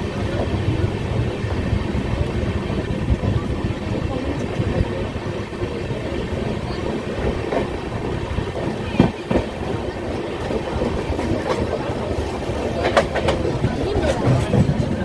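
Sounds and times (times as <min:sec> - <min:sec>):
train wheels rumbling on rails: 0:00.0 - 0:15.0
wheels clacking over rail joint: 0:06.1 - 0:15.0.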